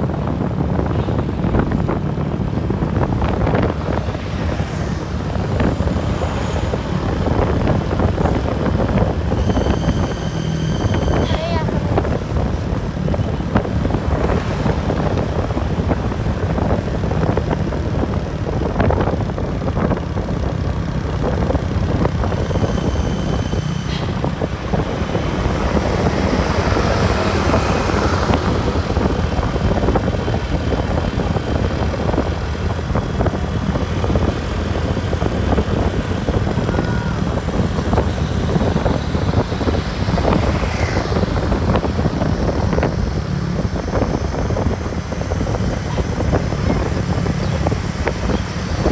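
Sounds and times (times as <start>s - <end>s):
bus engine and road rumble: 0.0s - 48.9s.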